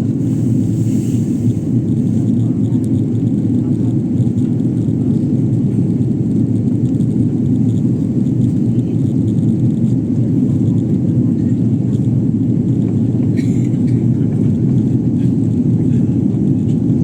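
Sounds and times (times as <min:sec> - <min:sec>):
airliner cabin engine drone: 0:00.0 - 0:17.0.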